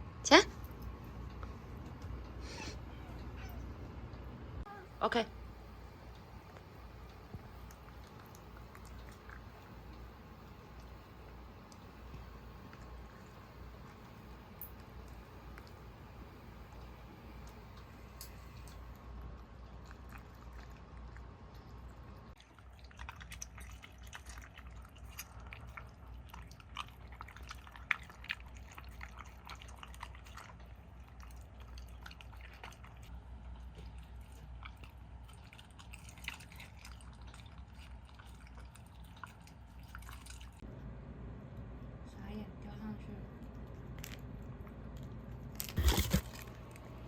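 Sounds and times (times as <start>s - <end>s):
low steady hum: 0.0s - 47.0s
dog chewing and licking: 5.9s - 40.7s.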